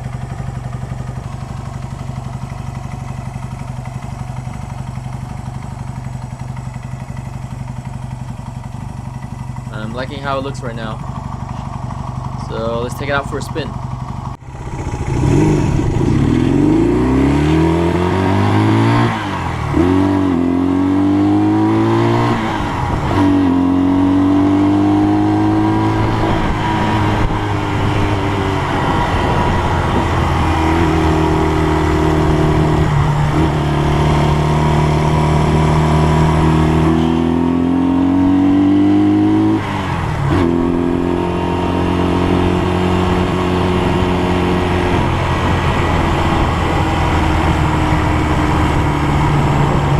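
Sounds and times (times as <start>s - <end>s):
motorcycle engine accelerating: 0.0s - 49.9s.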